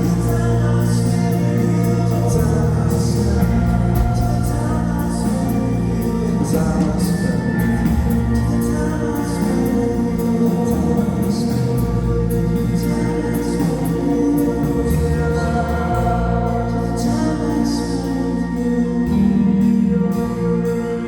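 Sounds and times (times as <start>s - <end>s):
long held sung notes: 0.0s - 21.0s
sustained band instruments: 0.0s - 21.0s.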